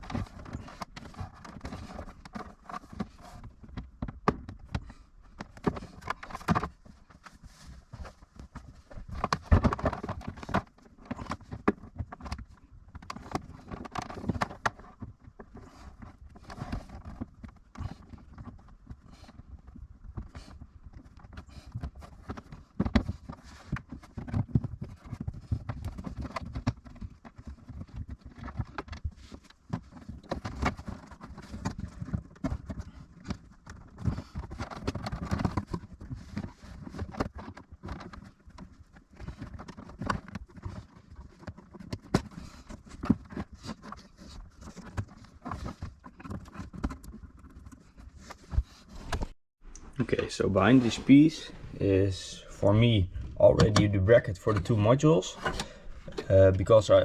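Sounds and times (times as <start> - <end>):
tools handling car parts: 52.5 - 56.4.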